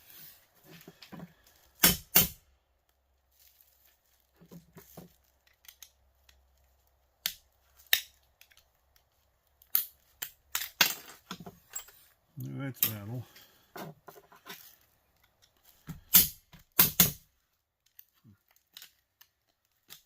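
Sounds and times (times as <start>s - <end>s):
plastic clicks and snaps: 5.3s - 10.7s.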